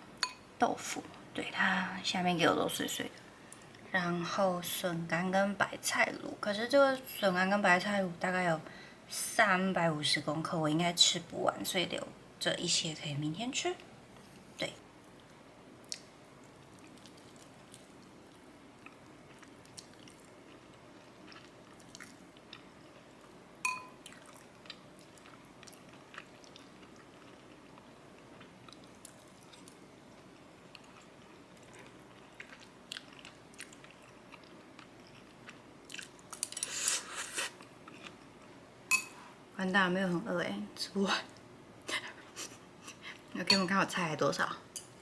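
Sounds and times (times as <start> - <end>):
chewing: 15.8 - 23.4, 24.0 - 38.3
ringing clink: 23.7 - 23.9.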